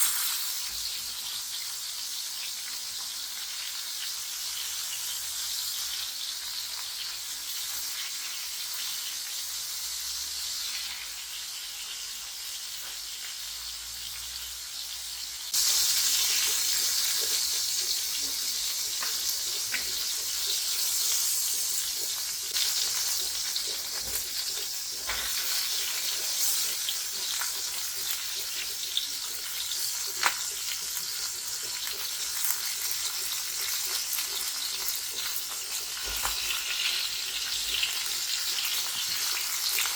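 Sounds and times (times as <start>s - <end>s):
food sizzling in hot oil: 0.0s - 39.9s
oil crackling and popping: 0.0s - 39.9s.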